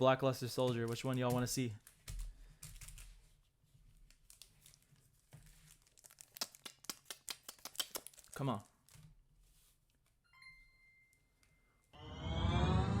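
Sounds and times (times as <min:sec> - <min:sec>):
foil wrapper crinkling: 0:03.9 - 0:09.2
sharp crackles of foil: 0:04.1 - 0:09.0.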